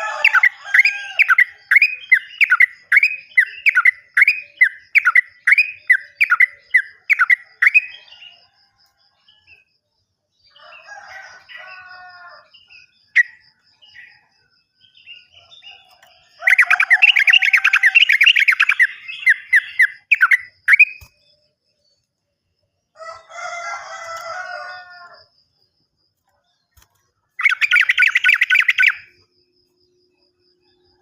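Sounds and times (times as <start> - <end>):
bird chattering song: 0.0 - 8.4, 14.9 - 21.4, 26.6 - 29.2.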